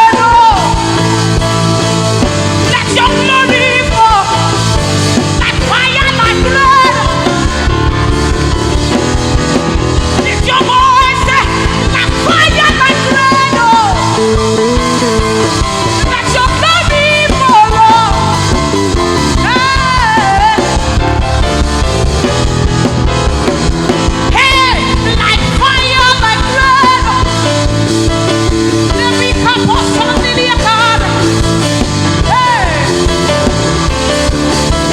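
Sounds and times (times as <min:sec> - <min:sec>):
gospel band playing: 0:00.0 - 0:34.9
lead singer: 0:00.0 - 0:34.9.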